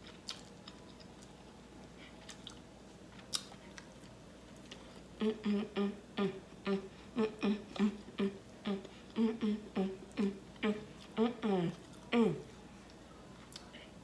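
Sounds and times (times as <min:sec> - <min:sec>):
person chewing meat: 0:00.0 - 0:05.3
woman humming: 0:05.2 - 0:12.5.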